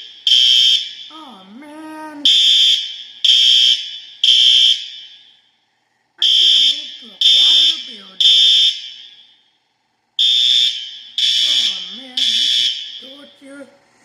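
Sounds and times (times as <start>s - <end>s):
fire alarm beeping: 0.0s - 1.2s, 2.2s - 5.6s, 6.2s - 9.6s, 10.2s - 13.3s.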